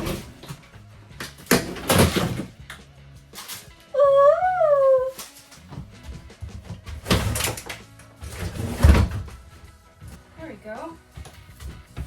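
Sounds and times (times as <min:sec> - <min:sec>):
background music: 0:00.0 - 0:12.0.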